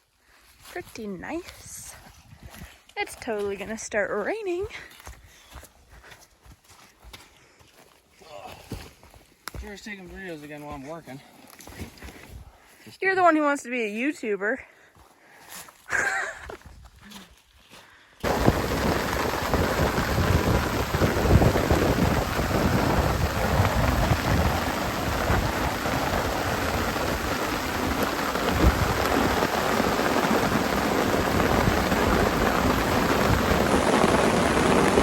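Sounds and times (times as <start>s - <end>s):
heavy rain in strong wind: 18.2s - 35.0s
low rumbling: 18.2s - 35.0s.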